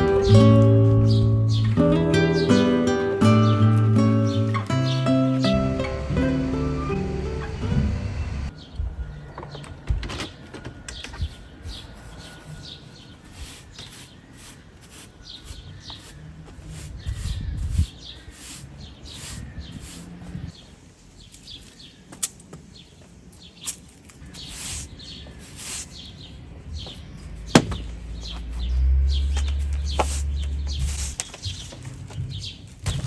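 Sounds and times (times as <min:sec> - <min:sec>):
small birds chirping: 0:00.0 - 0:33.0
steady low hum: 0:04.0 - 0:09.3.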